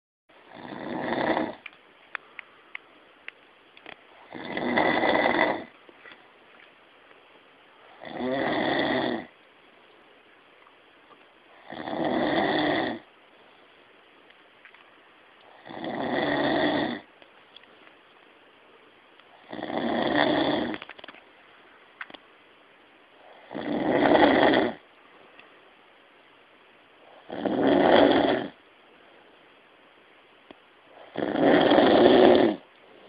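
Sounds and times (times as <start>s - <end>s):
man snoring loudly: 0.5s - 1.6s, 4.3s - 5.7s, 8.0s - 9.3s, 11.6s - 13.0s, 15.6s - 17.1s, 19.5s - 20.8s, 23.4s - 24.8s, 27.2s - 28.6s, 31.0s - 32.6s.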